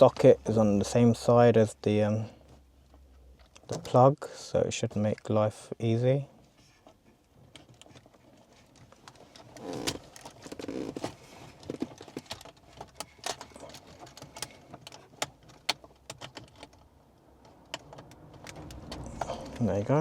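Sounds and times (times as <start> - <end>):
rustling of wiring and plastic: 6.5 - 20.0.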